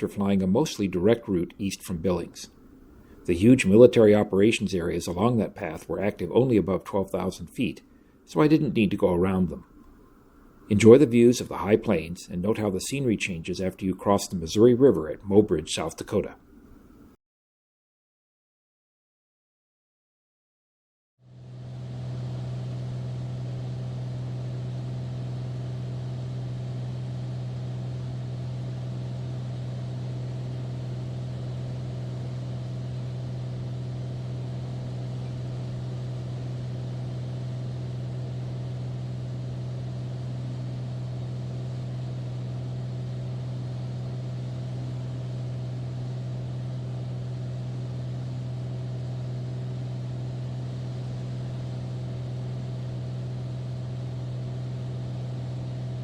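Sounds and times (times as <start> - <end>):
propeller plane engine droning: 23.0 - 56.0.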